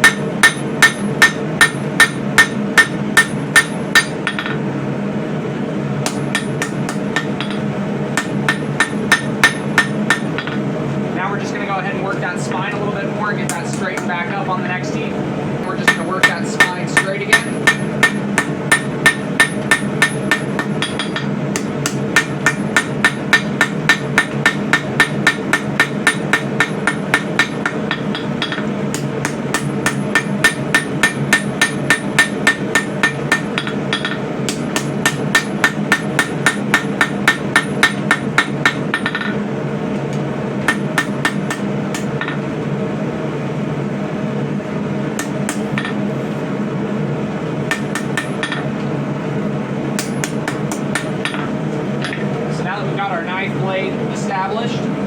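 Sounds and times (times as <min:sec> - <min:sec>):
hammer striking steel on anvil: 0:00.0 - 0:04.6, 0:06.0 - 0:10.6, 0:15.6 - 0:39.4, 0:40.7 - 0:42.5, 0:45.2 - 0:46.0, 0:47.7 - 0:48.8, 0:50.0 - 0:52.3
steady background noise: 0:00.0 - 0:55.0.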